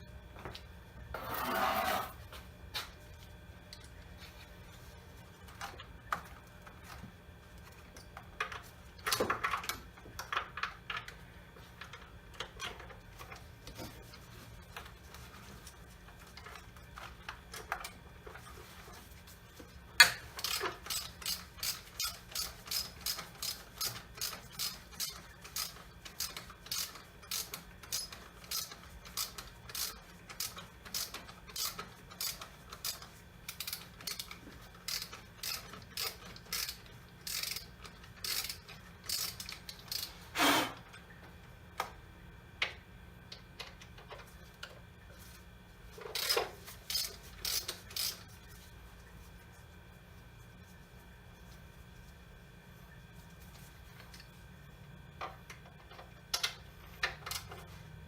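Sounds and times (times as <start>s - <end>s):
ratchet wrench clicking: 20.4s - 40.1s, 46.2s - 48.2s.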